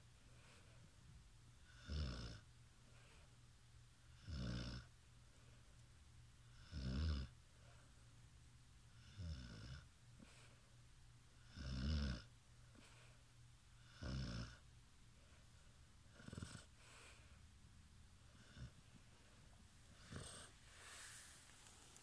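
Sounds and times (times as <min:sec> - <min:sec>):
slow regular snoring: 0:01.7 - 0:02.4, 0:04.2 - 0:04.9, 0:06.6 - 0:07.3, 0:11.5 - 0:12.3, 0:13.8 - 0:14.6, 0:16.1 - 0:17.1, 0:18.4 - 0:18.8, 0:19.9 - 0:22.0.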